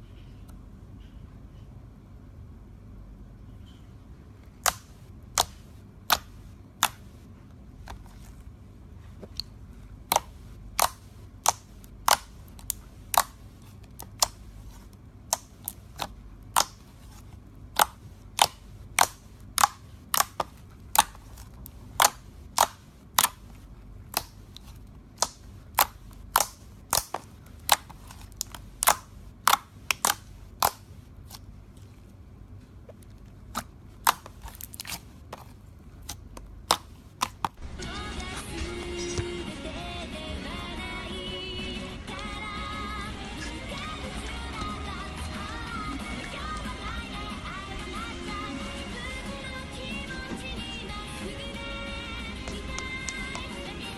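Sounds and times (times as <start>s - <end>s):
toy slime clicking and popping: 4.6s - 7.1s, 7.9s - 8.2s, 10.1s - 31.5s, 33.0s - 37.6s.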